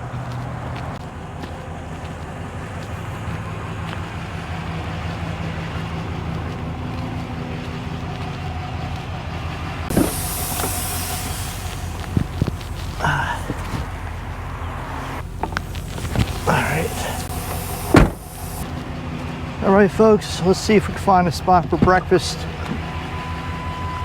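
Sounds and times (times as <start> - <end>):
truck engine running: 0.0 - 24.0
high hiss: 9.9 - 18.6.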